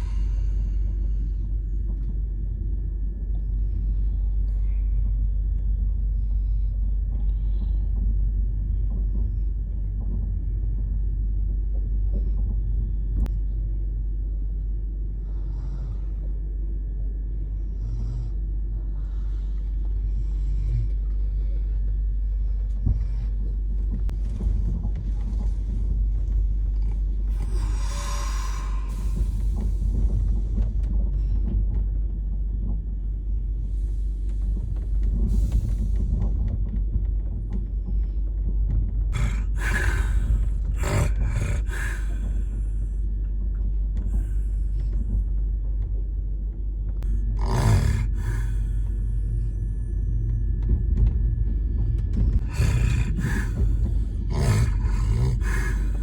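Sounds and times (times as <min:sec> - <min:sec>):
train rumbling: 0:22.8 - 0:32.0, 0:33.6 - 0:45.4, 0:47.0 - 0:56.0.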